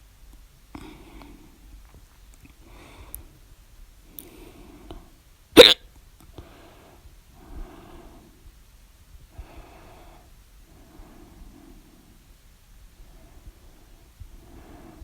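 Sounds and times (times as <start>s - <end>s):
person hiccuping: 5.6s - 5.8s.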